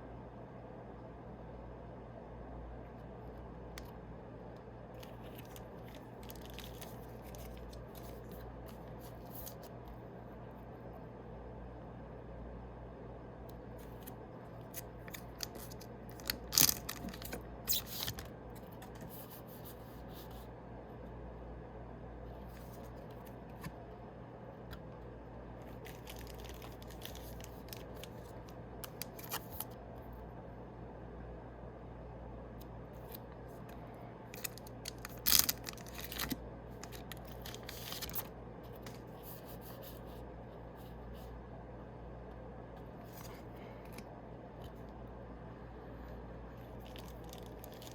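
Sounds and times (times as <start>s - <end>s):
foil wrapper crinkling: 5.0s - 9.7s, 13.8s - 18.9s, 25.6s - 29.8s, 34.4s - 38.3s, 46.7s - 47.9s
cards rustling: 5.0s - 9.8s, 13.8s - 19.7s, 22.5s - 23.8s, 25.6s - 29.8s, 34.4s - 39.8s, 46.6s - 47.9s.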